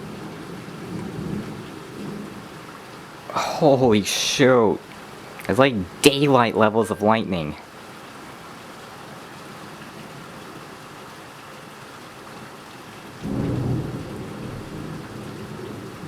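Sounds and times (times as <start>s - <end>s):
heavy rain hissing: 0.0s - 16.0s
thunder clap rumbling: 13.2s - 16.0s.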